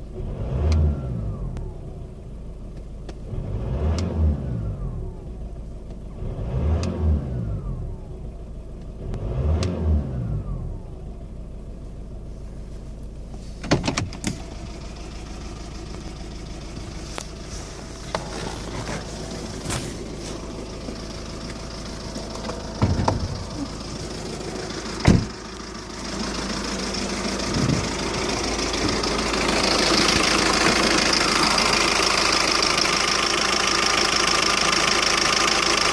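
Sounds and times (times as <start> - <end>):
diesel engine revving and idling: 0.0 - 35.9.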